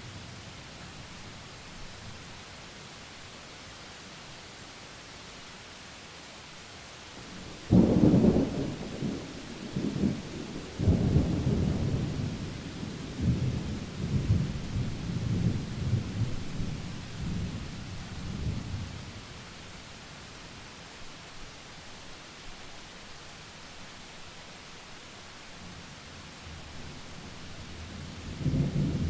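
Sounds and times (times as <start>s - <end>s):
rain hiss: 0.0s - 29.0s
thunder: 7.6s - 12.5s, 28.3s - 29.0s.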